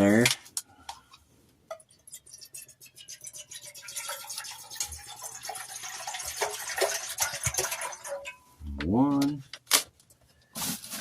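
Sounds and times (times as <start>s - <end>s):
water pouring into pot: 1.9s - 8.4s.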